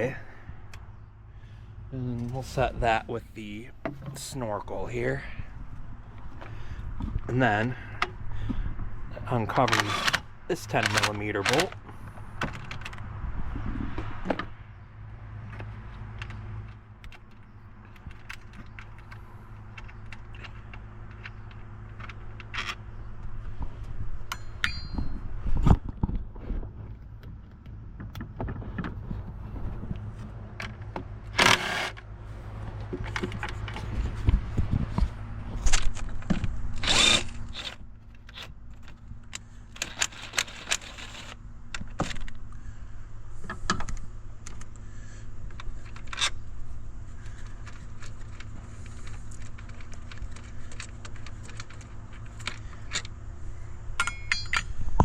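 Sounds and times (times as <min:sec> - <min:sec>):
hand tools clicking on metal: 0:54.0 - 0:54.8.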